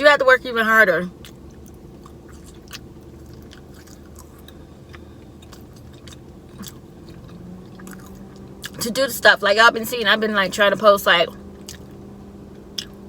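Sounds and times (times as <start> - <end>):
low steady hum: 0.0 - 13.0
person chewing food: 1.2 - 8.8, 11.6 - 12.0, 12.7 - 13.0.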